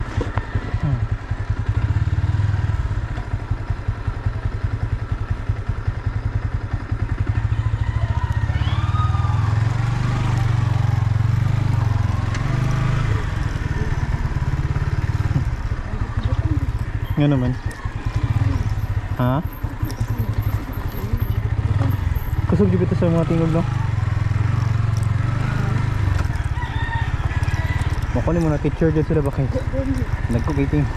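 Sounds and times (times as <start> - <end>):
motorcycle engine running: 0.0 - 30.9.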